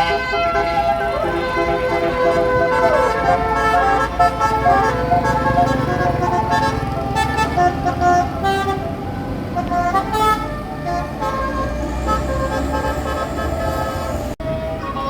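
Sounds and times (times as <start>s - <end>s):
bus engine running: 0.0s - 15.0s
multi-tone bus horn melody: 0.0s - 15.0s.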